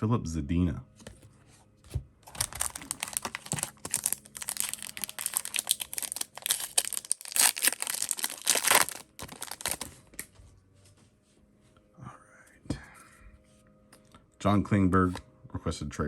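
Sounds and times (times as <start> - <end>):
wrapper tearing and crinkling: 2.2 - 10.0.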